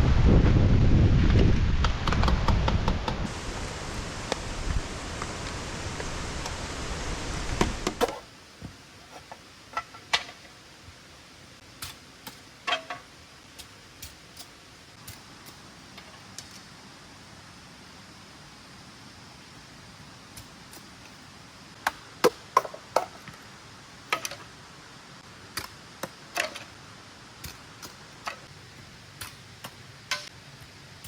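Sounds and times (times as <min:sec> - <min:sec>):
heavy rain: 0:00.0 - 0:08.0.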